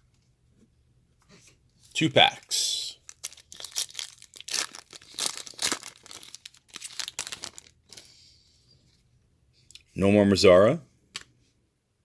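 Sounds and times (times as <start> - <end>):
foil wrapper tearing and crinkling: 3.0 - 8.0.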